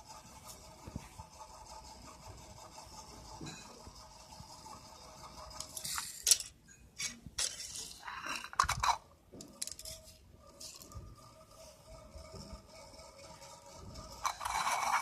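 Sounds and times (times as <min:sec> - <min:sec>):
small parts clattering and clinking: 0:05.5 - 0:15.0.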